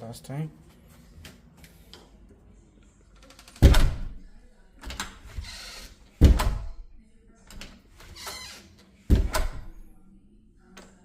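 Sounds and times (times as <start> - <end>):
door closing with thud: 3.6 - 4.2, 4.8 - 6.8, 8.1 - 9.8.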